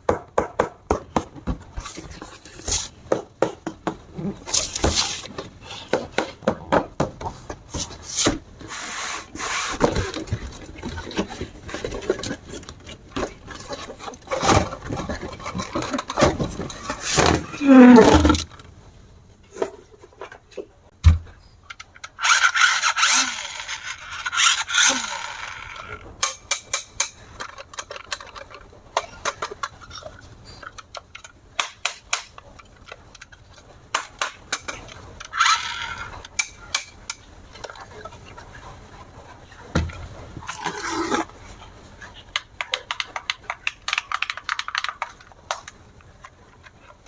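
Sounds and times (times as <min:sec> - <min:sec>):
handling clicks and knocks: 0:42.3 - 0:47.0.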